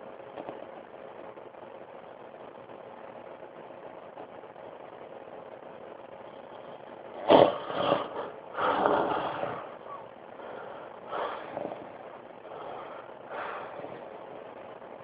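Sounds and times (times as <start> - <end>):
man snoring: 7.2 - 10.0.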